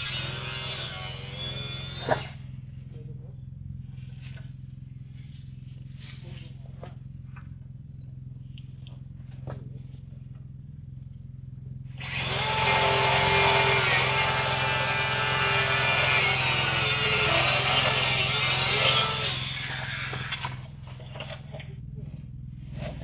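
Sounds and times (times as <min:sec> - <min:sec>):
power tool whining: 0:00.0 - 0:04.8, 0:11.1 - 0:21.6
low hum: 0:00.0 - 0:23.0
faint clicks: 0:08.4 - 0:09.5.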